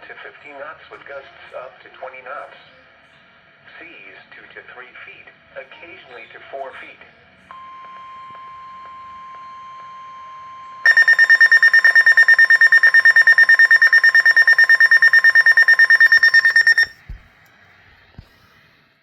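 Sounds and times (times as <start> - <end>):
steady alert tone: 10.9 - 16.9
rapid high-pitched alarm beeping: 10.9 - 17.0.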